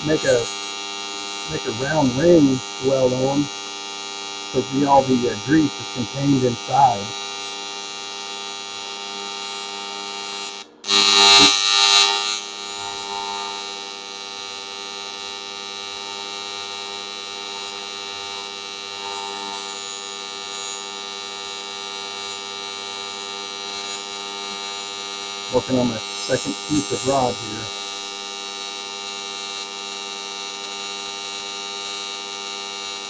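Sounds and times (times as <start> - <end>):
welding arc buzzing: 0.0 - 33.0.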